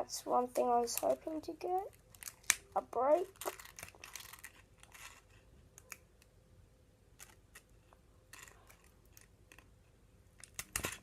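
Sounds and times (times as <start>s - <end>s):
foil pack crinkling: 0.8s - 5.3s.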